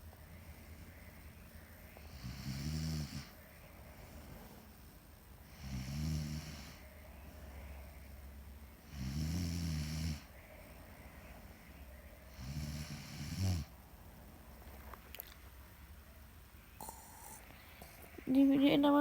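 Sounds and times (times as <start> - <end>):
quiet breathing: 0.0 - 14.8, 16.6 - 18.4
woman snoring: 2.1 - 3.3, 5.5 - 6.8, 8.9 - 10.3, 12.3 - 13.7, 16.8 - 18.0.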